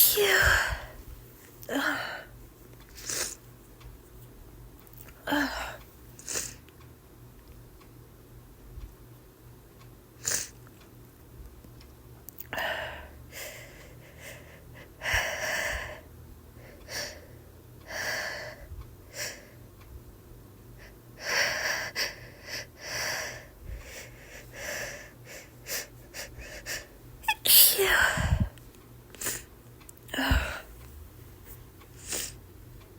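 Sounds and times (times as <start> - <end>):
woman's short hitching breaths: 22.9 - 28.5, 30.1 - 30.8.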